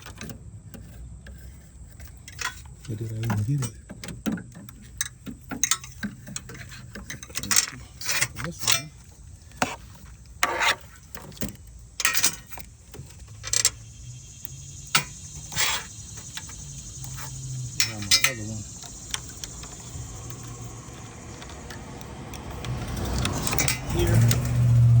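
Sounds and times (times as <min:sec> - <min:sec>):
metal tools clinking: 0:04.6 - 0:09.2, 0:14.8 - 0:25.0.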